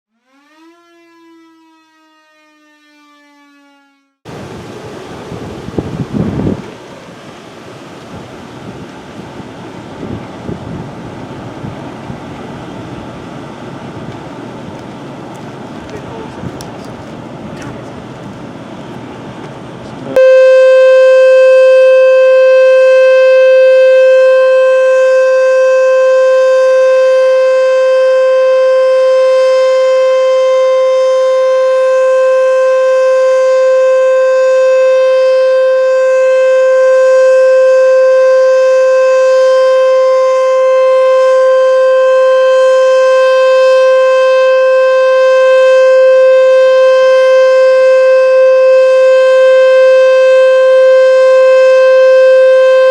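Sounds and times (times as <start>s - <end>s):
outdoor warning siren steady tone: 0.1s - 7.4s, 20.1s - 52.9s.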